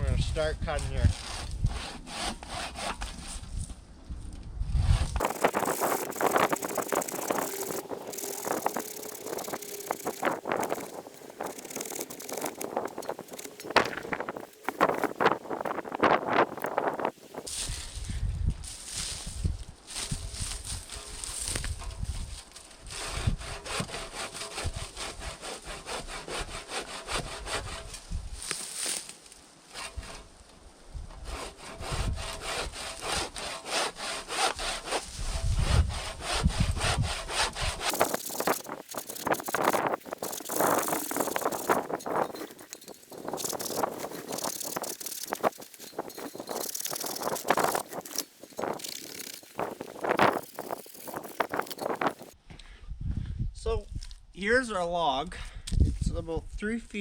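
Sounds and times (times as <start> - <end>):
handsaw rasping through log: 1.1 - 3.4, 5.2 - 17.1, 22.9 - 28.0, 31.2 - 52.4
wind buffeting microphone: 3.4 - 18.6, 30.9 - 32.8, 35.1 - 54.2, 55.6 - 56.6.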